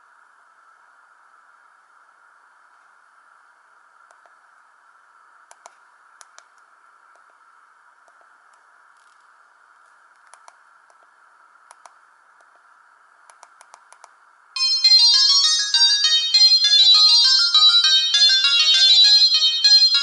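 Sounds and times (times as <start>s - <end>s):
faint steady hiss: 0.0s - 14.6s.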